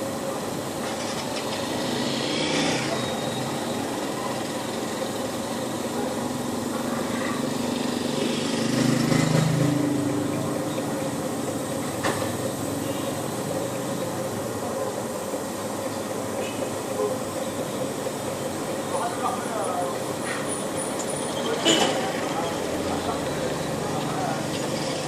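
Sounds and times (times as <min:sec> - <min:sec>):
village street ambience: 0:00.0 - 0:25.0
small engine passing: 0:01.4 - 0:14.6.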